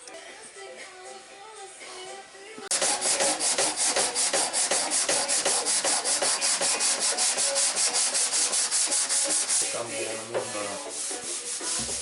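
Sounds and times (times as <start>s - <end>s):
sandpaper rubbing on car bodywork: 2.7s - 12.0s.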